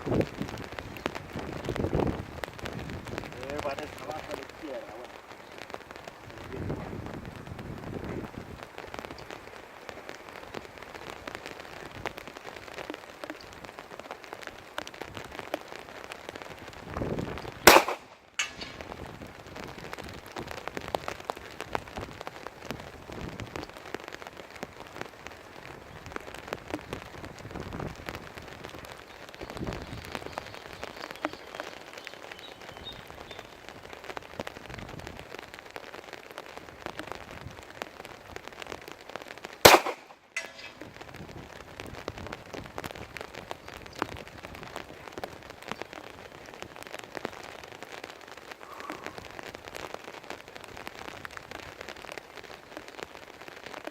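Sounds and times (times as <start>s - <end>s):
gusting wind: 0.0s - 35.6s, 39.6s - 47.0s
steady rain: 0.0s - 53.9s
pistol shot: 17.7s - 18.7s, 39.7s - 40.7s.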